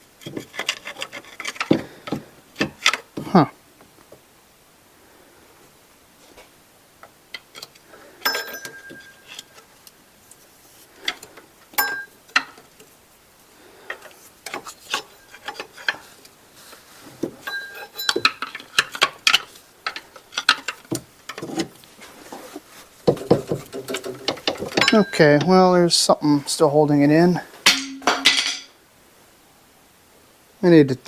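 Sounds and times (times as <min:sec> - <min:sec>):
metallic clicks and clinks: 0:07.3 - 0:09.6, 0:17.4 - 0:21.4, 0:23.7 - 0:25.6.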